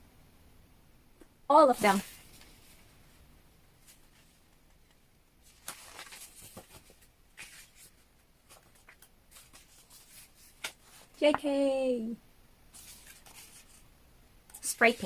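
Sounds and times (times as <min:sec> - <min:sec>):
paper photos rustling: 0:01.6 - 0:03.0, 0:03.8 - 0:11.4, 0:12.7 - 0:13.9, 0:14.5 - 0:15.0.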